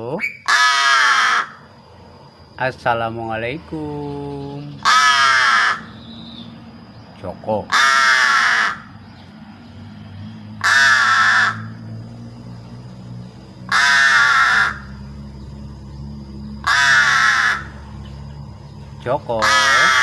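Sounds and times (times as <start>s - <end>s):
crow cawing: 0.4s - 1.7s, 4.8s - 6.5s, 7.6s - 9.0s, 10.6s - 11.9s, 13.6s - 15.1s, 16.6s - 18.2s, 19.3s - 20.0s.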